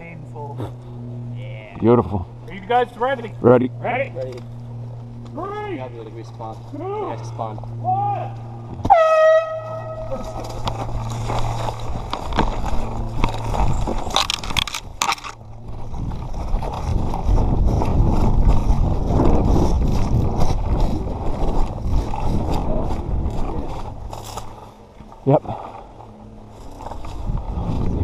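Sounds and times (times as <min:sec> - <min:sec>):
low steady hum: 0:00.0 - 0:28.0
footsteps crunching on rough ground: 0:04.4 - 0:28.0
gear rattling: 0:10.0 - 0:25.2.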